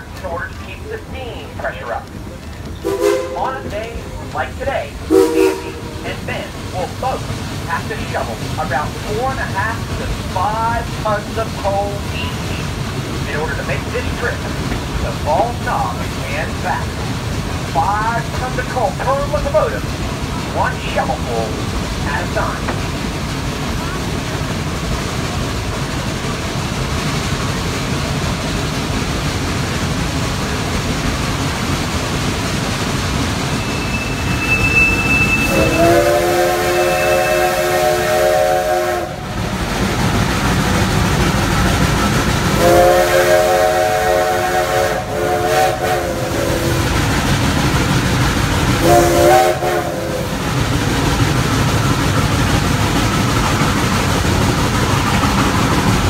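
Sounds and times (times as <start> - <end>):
steam locomotive rumble: 0.0 - 56.0
chime whistle blasts: 33.6 - 36.0.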